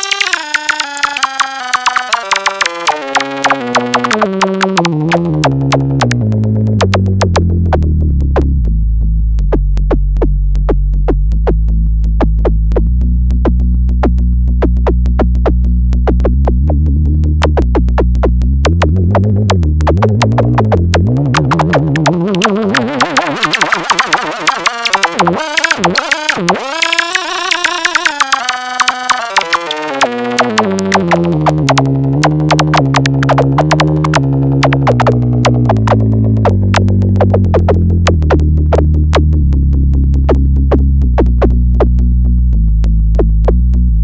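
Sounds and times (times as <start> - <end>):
synthesizer tone gliding in pitch: 0.0 - 7.0, 19.1 - 39.6
sharp clicks: 0.0 - 7.8, 17.4 - 39.3.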